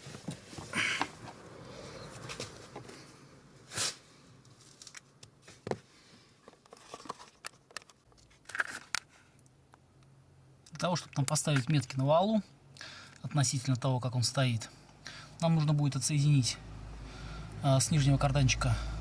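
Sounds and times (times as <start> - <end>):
rustling or scraping: 2.1 - 9.3.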